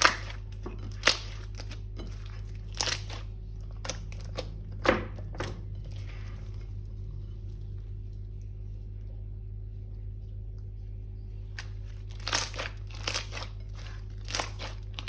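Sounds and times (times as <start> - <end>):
plastic and slime crackling: 0.0 - 6.8, 11.5 - 15.0
low electrical hum: 0.0 - 15.0.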